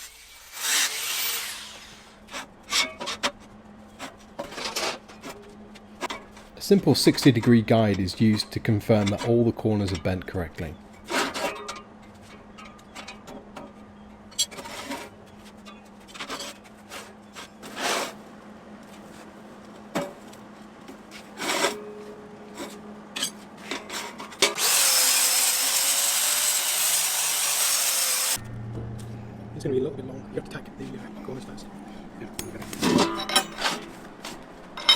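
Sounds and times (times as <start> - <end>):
steady low hum: 28.4 - 34.9
metal scrapes and knocks: 32.6 - 34.0.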